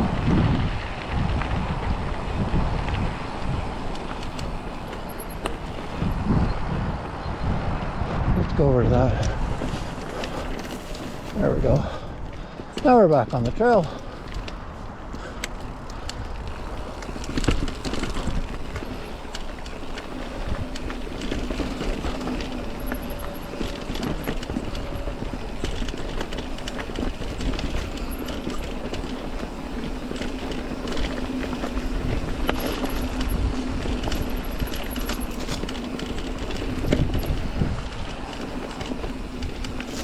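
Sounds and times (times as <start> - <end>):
bike rattling over rocks: 0.0 - 6.4, 9.4 - 40.0
bike tyres rolling on dirt: 0.0 - 40.0.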